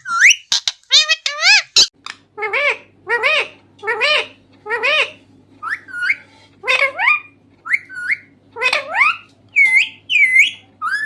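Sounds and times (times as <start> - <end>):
parrot whistling and squawking: 0.0 - 1.9, 7.0 - 11.0.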